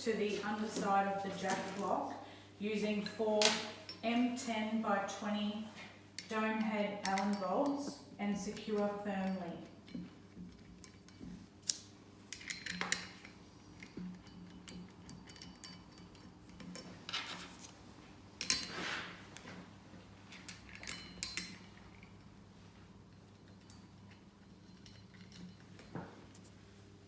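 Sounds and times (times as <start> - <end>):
steel parts and bolts clinking: 7.0 - 7.8, 12.3 - 17.2, 18.4 - 19.5, 20.3 - 22.2.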